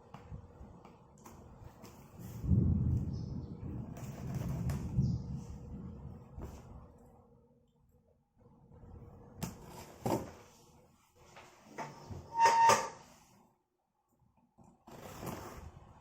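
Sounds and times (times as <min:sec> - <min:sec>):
packaging rustling and scraping: 0:03.9 - 0:04.9, 0:14.9 - 0:15.8.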